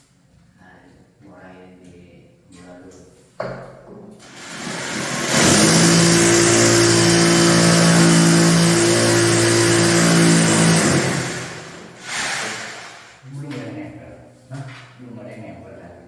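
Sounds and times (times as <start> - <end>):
power tool motor whine: 4.2 - 13.2.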